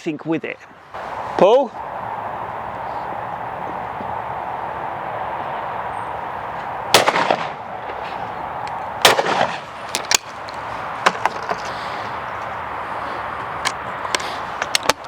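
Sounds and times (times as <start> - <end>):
shotgun shots: 6.9 - 7.6, 9.0 - 9.7.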